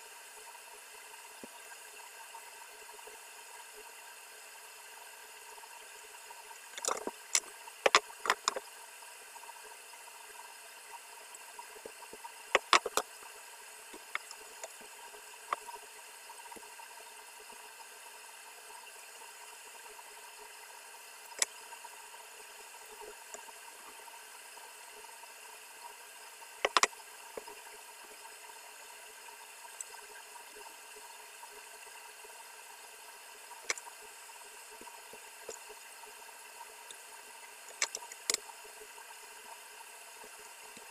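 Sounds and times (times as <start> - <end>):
steady hiss: 1.0 - 40.9
tool clicks and knocks: 12.6 - 13.0, 26.6 - 26.9.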